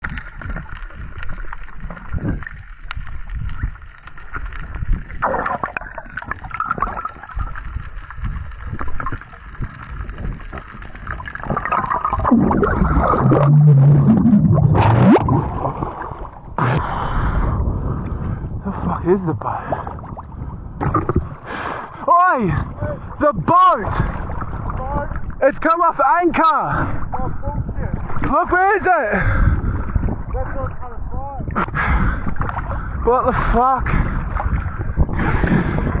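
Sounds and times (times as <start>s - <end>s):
underwater gurgling and bubbling: 0.0s - 18.6s, 19.4s - 21.6s, 23.9s - 25.4s.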